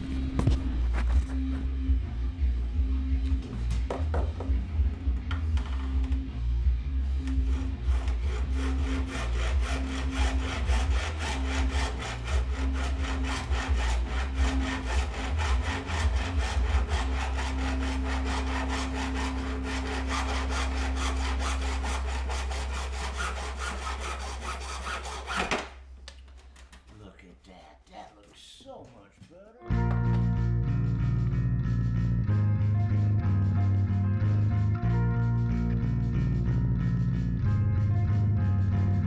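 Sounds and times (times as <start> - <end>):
power saw cutting: 7.3 - 25.7.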